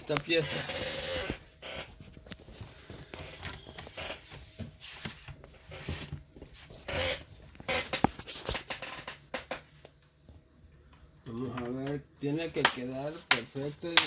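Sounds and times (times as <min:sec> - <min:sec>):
plastic rubbing and scraping: 0:00.1 - 0:09.8.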